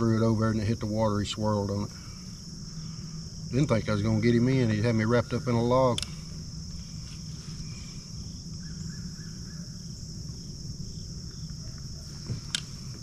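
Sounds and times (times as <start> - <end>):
crickets chirping: 0.0 - 13.0
low rumbling background: 0.0 - 13.0
sharp click: 5.9 - 6.2.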